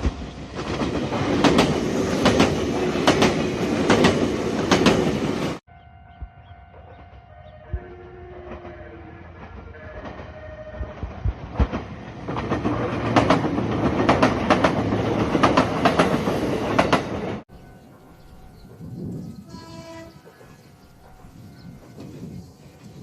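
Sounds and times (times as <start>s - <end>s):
train passing rumble: 0.0s - 23.0s
wheels clacking over rail joints: 0.5s - 5.6s, 11.6s - 17.4s.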